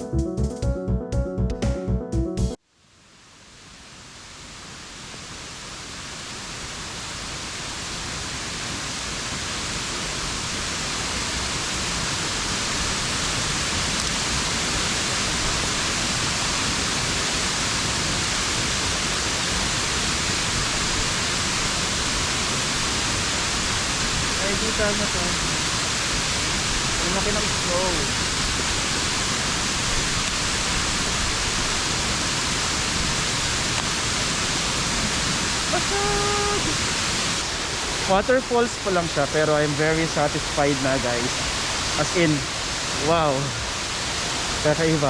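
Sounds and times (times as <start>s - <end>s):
music: 0.0s - 2.6s
waterfall rushing: 9.7s - 45.0s.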